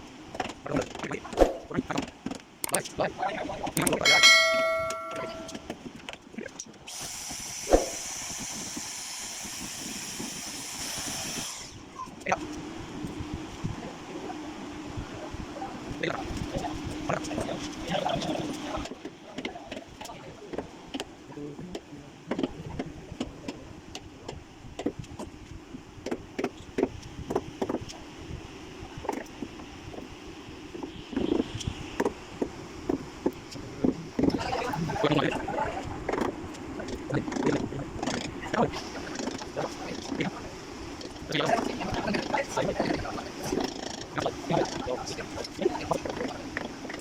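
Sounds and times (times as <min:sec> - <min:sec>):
low background hum: 0:00.0 - 0:47.0
ringing metallic clang: 0:04.0 - 0:05.6.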